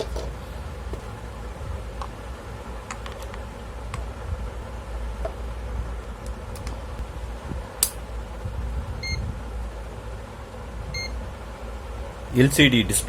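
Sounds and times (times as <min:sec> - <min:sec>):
steady low hum: 0:00.0 - 0:13.0
sharp click: 0:07.8 - 0:08.0.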